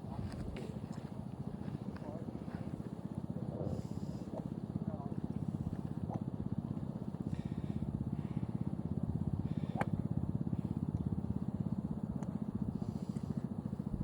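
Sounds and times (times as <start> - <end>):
golf balls being struck: 9.6 - 10.0.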